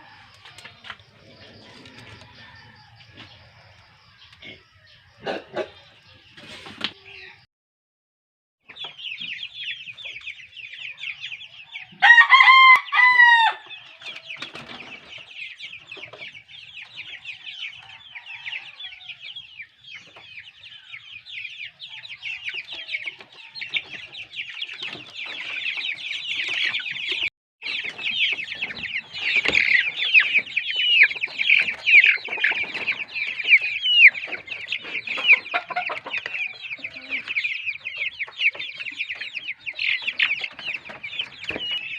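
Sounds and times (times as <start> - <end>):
chickens calling: 0.0 - 7.5, 8.6 - 41.9
rooster crowing: 1.4 - 3.3, 12.0 - 14.0, 17.8 - 19.4.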